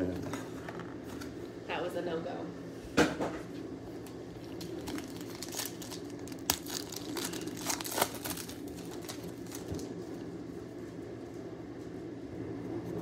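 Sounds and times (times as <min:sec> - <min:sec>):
card pack wrappers crinkling and tearing: 0:04.4 - 0:10.2.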